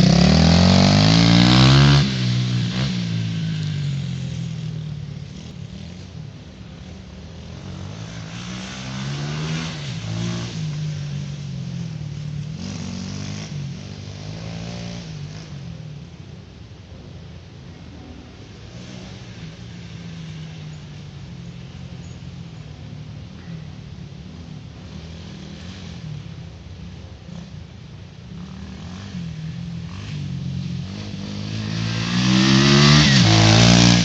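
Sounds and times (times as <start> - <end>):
pit bike engine revving: 0.0 - 6.1, 7.1 - 15.6, 28.3 - 34.0.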